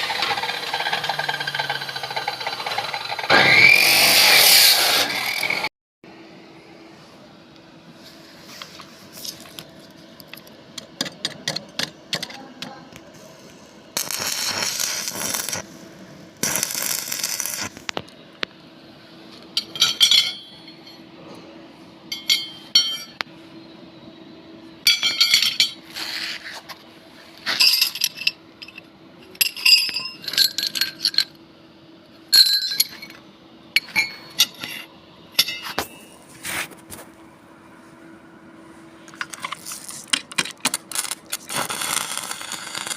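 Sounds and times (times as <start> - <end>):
steady hum: 5.4 - 42.9
steel pieces clinking: 19.6 - 21.0, 24.9 - 25.8, 27.5 - 31.4, 32.3 - 33.2.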